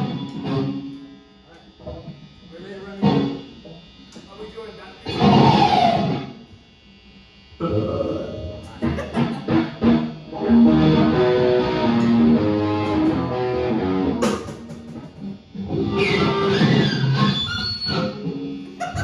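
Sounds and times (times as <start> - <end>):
electric guitar playing: 0.0 - 2.4, 3.0 - 3.8, 5.0 - 6.4, 7.6 - 19.0.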